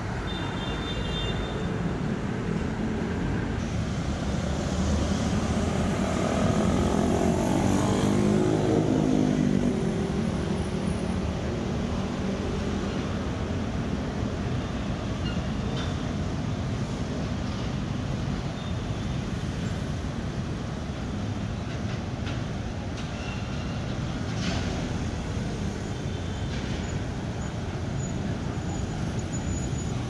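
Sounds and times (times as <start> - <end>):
road traffic rumbling: 0.0 - 30.0.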